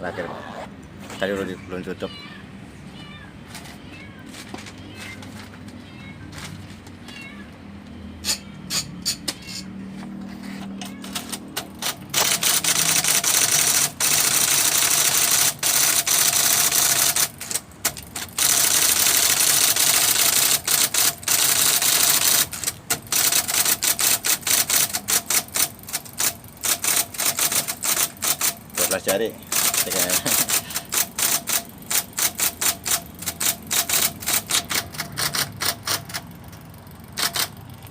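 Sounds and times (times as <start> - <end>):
electric typewriter motor humming: 10.7 - 37.9
typewriter keystrokes clattering: 10.9 - 36.3, 37.1 - 37.6.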